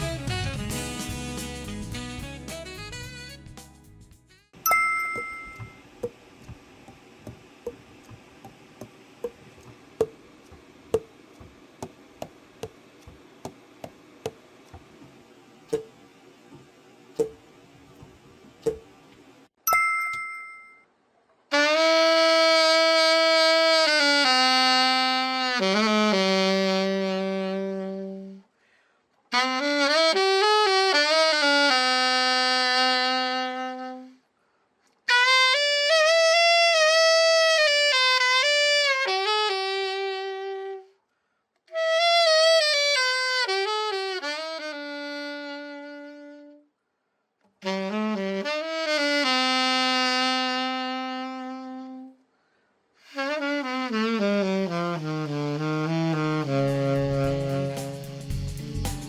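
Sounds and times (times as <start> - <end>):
alto saxophone long held notes: 0.0 - 3.6, 21.5 - 28.6, 29.3 - 34.3, 35.1 - 41.0, 41.6 - 46.8, 47.6 - 58.8.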